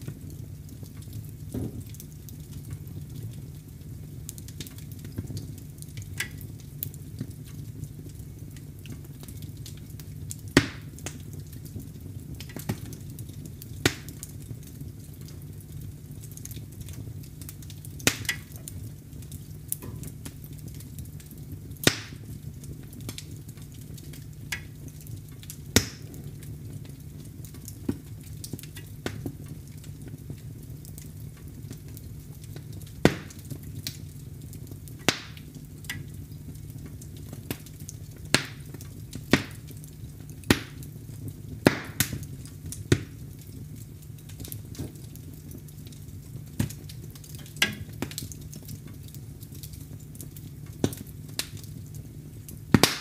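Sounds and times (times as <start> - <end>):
wood fire crackling: 0.0 - 53.0
sharp loud fire pop: 10.6 - 10.9, 13.9 - 14.1, 21.8 - 22.2, 25.8 - 26.1, 33.1 - 33.4, 35.1 - 35.4, 38.4 - 38.6, 40.5 - 40.8, 41.7 - 42.2, 52.8 - 53.0.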